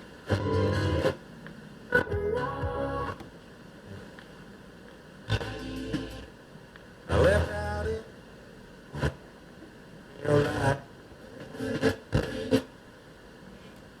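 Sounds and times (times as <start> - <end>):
radio static hiss: 0.0 - 2.2, 2.8 - 13.6.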